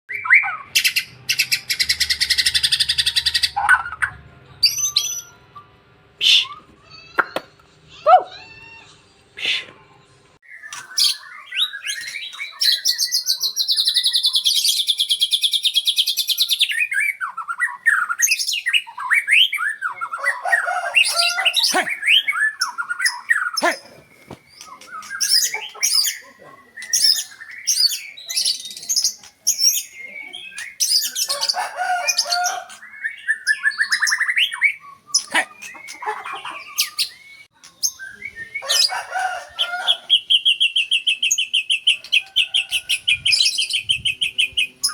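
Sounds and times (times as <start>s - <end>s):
bird singing whistled phrases and trills: 10.4s - 31.6s, 32.2s - 38.8s.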